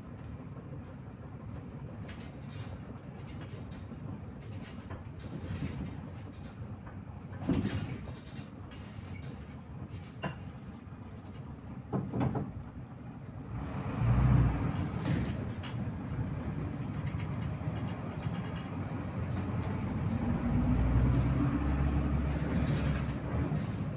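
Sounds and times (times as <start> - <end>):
bus engine and road rumble: 0.0 - 23.9
rattles and knocks: 14.6 - 23.9.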